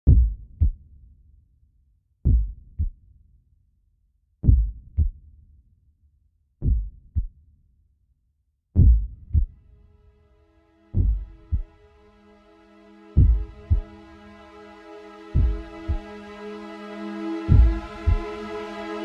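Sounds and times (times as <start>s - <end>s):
heartbeat thumps: 0.0s - 0.8s, 2.3s - 2.9s, 4.4s - 5.2s, 6.6s - 7.3s, 8.8s - 9.5s, 11.0s - 11.7s, 13.2s - 13.9s, 15.3s - 16.0s, 17.5s - 18.2s.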